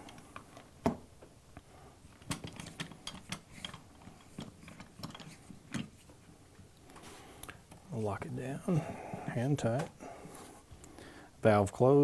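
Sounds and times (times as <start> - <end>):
metal clicks and knocks: 2.2 - 6.0.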